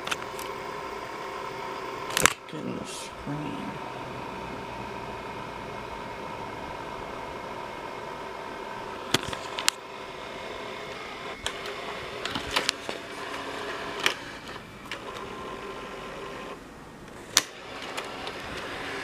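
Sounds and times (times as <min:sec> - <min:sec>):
mechanical hum with faint whine: 0:00.0 - 0:19.0.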